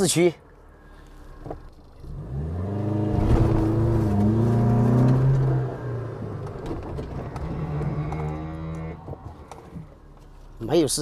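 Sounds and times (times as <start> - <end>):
engine revving hard: 2.0 - 5.7.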